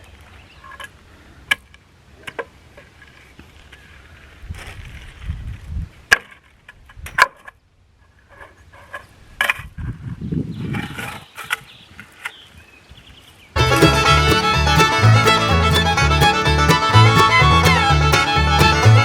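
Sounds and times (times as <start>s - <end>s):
fiddle and banjo bluegrass music: 13.6s - 19.0s.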